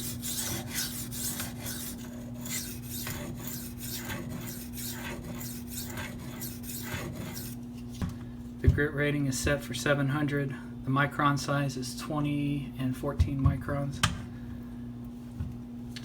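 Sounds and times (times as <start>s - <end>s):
knife scraping sharpening stone: 0.0s - 7.6s
steady low hum: 0.0s - 16.0s.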